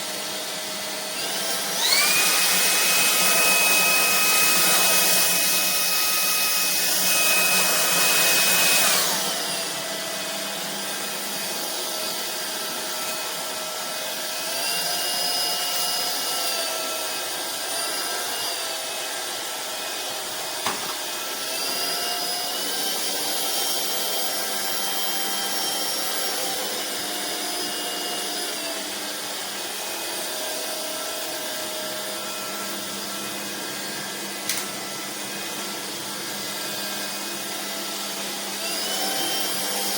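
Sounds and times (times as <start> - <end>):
stick vacuum running: 0.0 - 39.9.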